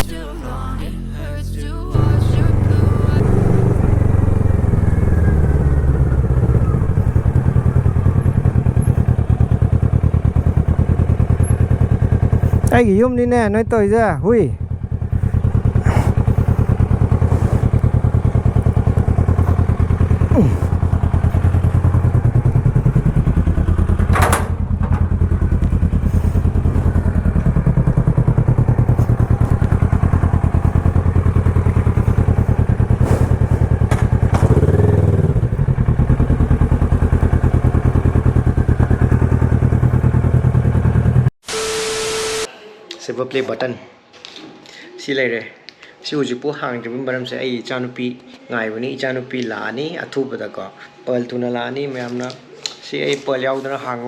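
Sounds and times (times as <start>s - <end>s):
motorcycle engine running: 1.9s - 41.4s.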